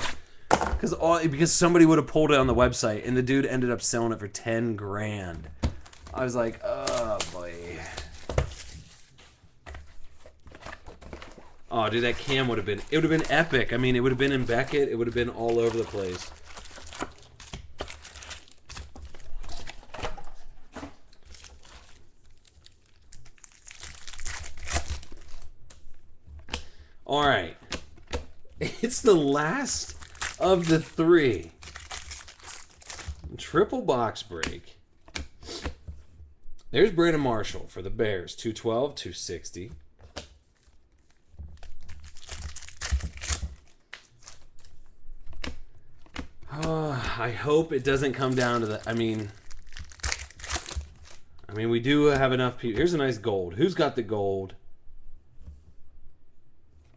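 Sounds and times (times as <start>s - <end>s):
plastic wrapping tearing and crinkling: 11.0s - 20.5s, 21.1s - 25.8s, 28.8s - 33.2s, 40.5s - 46.8s, 47.7s - 51.3s.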